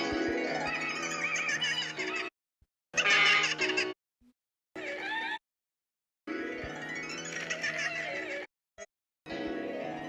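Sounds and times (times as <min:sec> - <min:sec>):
comedy music: 0:00.0 - 0:02.3, 0:03.0 - 0:04.0, 0:06.4 - 0:08.5.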